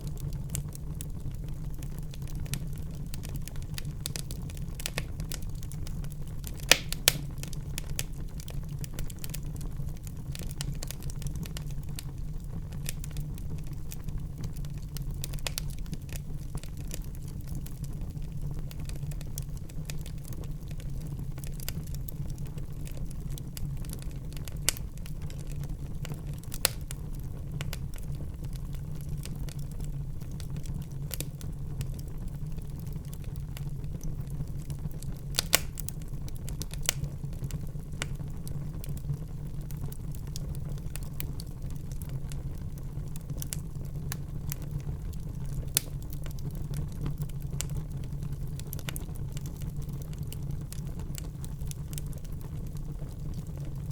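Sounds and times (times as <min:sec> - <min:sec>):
fire crackling in fireplace: 0:00.0 - 0:53.9
sharp pops of fire: 0:02.1 - 0:09.6, 0:34.0 - 0:39.1, 0:45.6 - 0:46.4.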